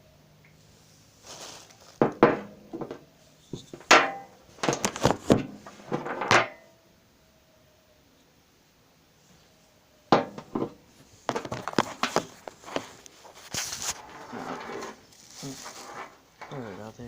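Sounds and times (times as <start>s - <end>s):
objects knocking and scraping: 1.9s - 6.7s, 10.1s - 17.0s.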